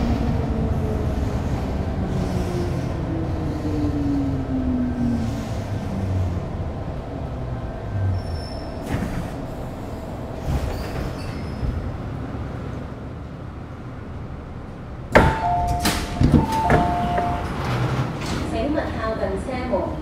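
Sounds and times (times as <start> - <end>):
train rumbling: 0.0 - 20.0
loud clunk: 15.1 - 18.5.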